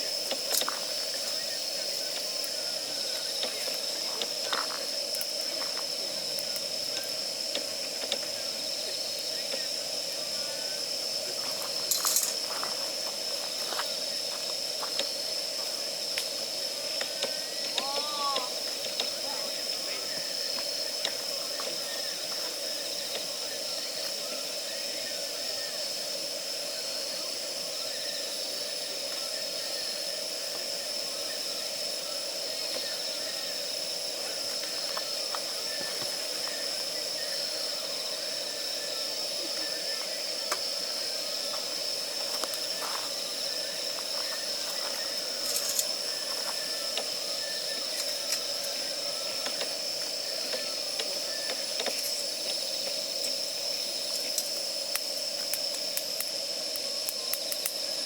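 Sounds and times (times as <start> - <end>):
fire hissing: 0.0 - 58.0
firewood crackling and popping: 2.2 - 8.4, 54.0 - 57.9.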